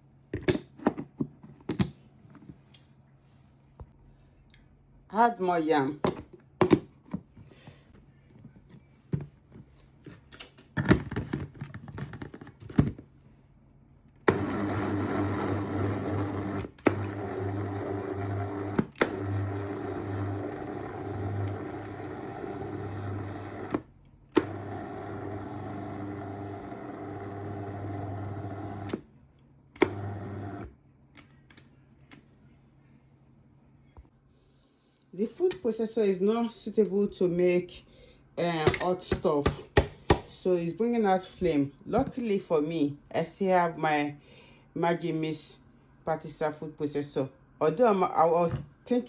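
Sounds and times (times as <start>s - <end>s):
food processor motor running: 14.3s - 29.0s, 29.8s - 30.7s.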